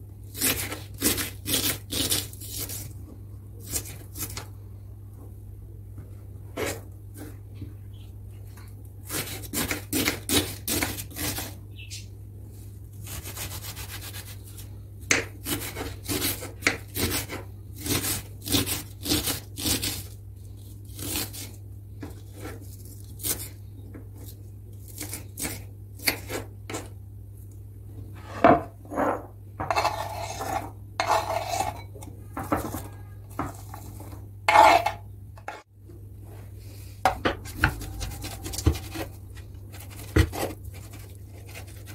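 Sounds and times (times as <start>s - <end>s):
steady low hum: 0.0s - 9.2s, 19.9s - 41.9s
dish scraping: 28.2s - 35.7s.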